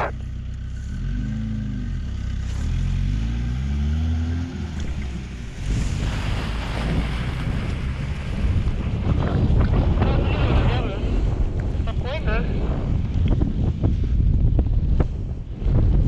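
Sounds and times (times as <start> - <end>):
low engine-like hum: 0.0 - 11.8
wind buffeting microphone: 4.9 - 16.0.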